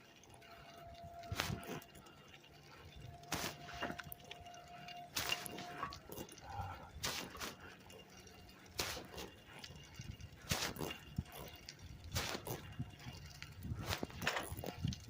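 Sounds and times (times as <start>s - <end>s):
bicycle rushing scrape: 3.2s - 4.0s, 6.6s - 8.1s, 8.7s - 14.8s.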